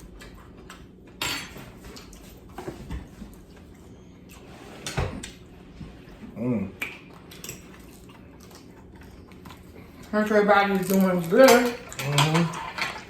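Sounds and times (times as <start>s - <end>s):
food crunching: 6.8s - 13.0s
utensils clicking on plate: 10.7s - 13.0s.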